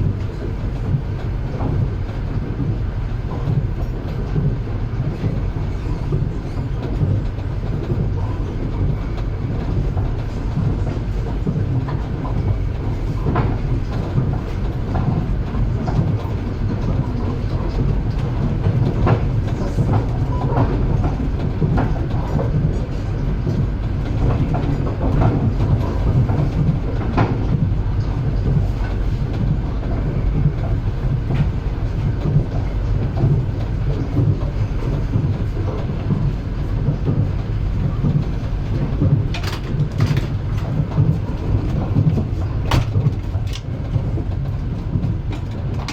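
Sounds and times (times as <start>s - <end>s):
train wheels clattering: 0.0s - 45.9s
wheels clicking over rail joints: 36.9s - 45.9s.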